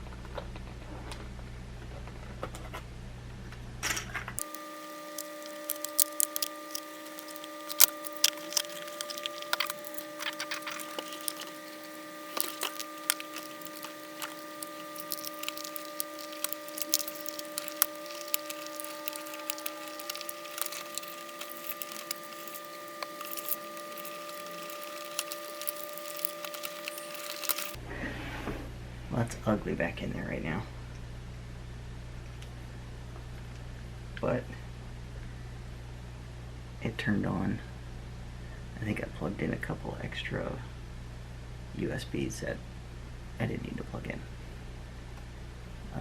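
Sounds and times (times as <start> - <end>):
hands handling computer clicking: 4.4 - 27.8
steady hum: 4.4 - 27.8.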